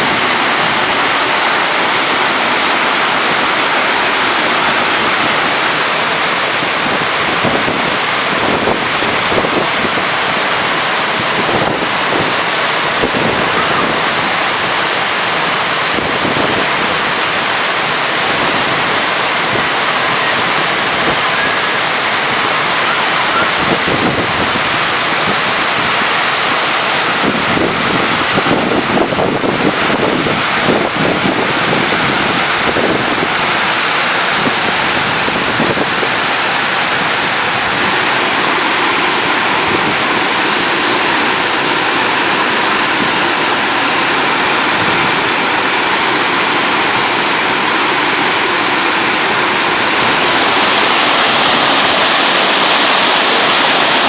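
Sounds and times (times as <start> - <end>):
waterfall rushing: 0.0 - 54.0
wind buffeting microphone: 2.1 - 14.9, 15.8 - 26.1, 27.0 - 36.3.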